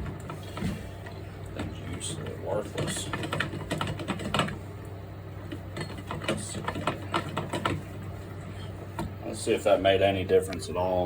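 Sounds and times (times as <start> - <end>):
steady low hum: 0.0 - 11.0
small clicks and knocks: 5.5 - 7.8.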